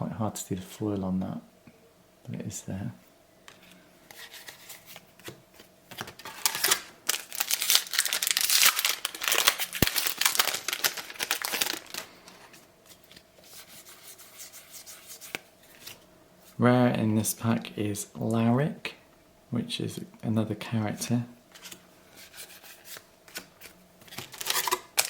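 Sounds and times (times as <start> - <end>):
cards rustling and clicking: 3.5 - 16.0, 21.5 - 25.0
wrapper crinkling and tearing: 5.9 - 12.4, 24.1 - 25.0.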